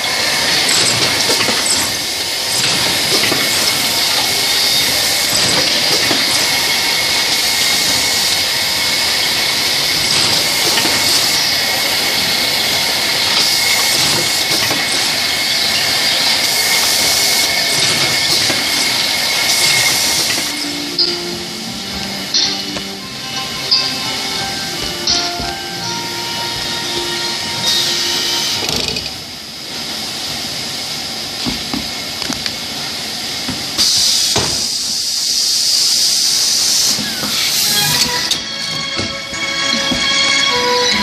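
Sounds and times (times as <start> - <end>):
high machine whine: 0.0 - 41.0
loud mechanical noise: 0.0 - 41.0
machine hiss: 0.0 - 41.0.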